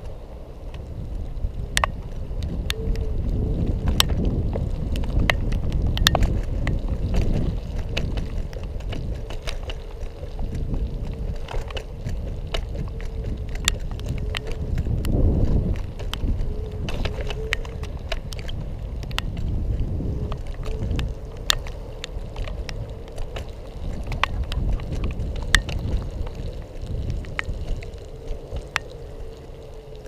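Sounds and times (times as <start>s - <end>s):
electric scooter rumbling over paving: 0.0s - 30.0s
faint steady whine: 0.0s - 30.0s
wind on microphone: 0.0s - 30.0s
clicks and rattles from bumps: 3.8s - 28.9s.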